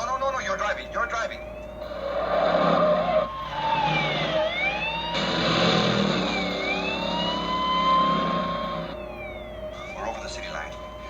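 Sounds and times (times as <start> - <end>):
police siren wailing: 0.0 - 11.0
car engine running: 1.8 - 9.6.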